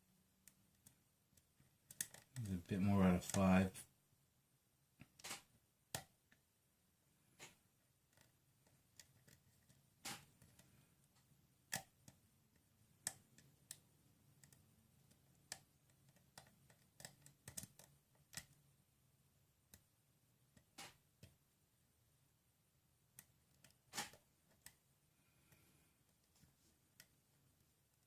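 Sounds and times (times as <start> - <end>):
lock pick clicking pins: 14.4 - 18.6.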